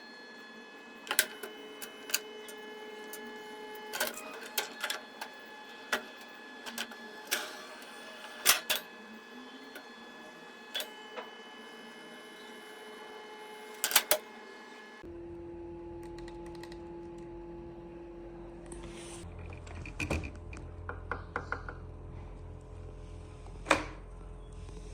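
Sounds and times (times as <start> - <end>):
printer motor and fan: 0.0 - 15.1
sharp clicks and clacks: 1.1 - 8.9, 13.8 - 14.3.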